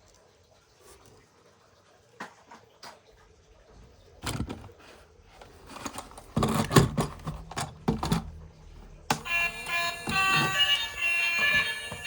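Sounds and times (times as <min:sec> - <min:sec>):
plastic toys clicking and knocking: 0:09.1 - 0:12.0.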